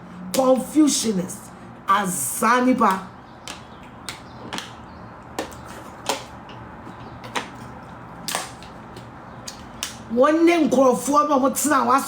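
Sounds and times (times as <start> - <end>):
sharp taps or clicks: 2.9 - 7.6.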